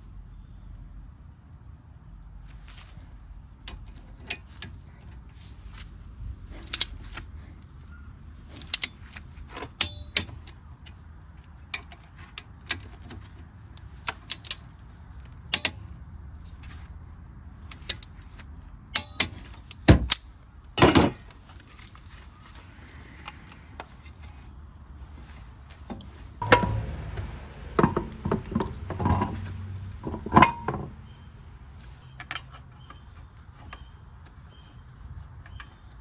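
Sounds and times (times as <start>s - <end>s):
hand tools clicking against metal: 9.7s - 10.4s, 15.5s - 15.8s, 18.9s - 20.2s
heavy knock and clatter: 26.4s - 29.4s.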